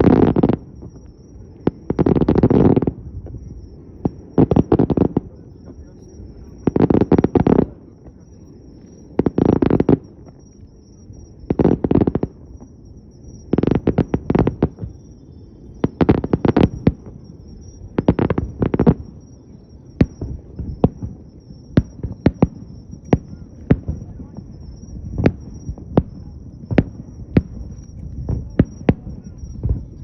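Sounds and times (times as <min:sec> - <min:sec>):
fireworks crackling bangs: 0:00.0 - 0:30.0
sharp firework bangs: 0:01.6 - 0:08.2, 0:13.6 - 0:15.2, 0:15.8 - 0:17.3, 0:17.9 - 0:19.2, 0:20.0 - 0:30.0.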